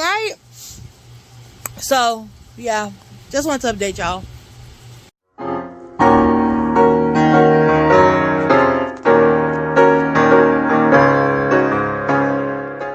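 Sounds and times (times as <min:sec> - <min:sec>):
piano chords and notes: 0:05.2 - 0:12.9.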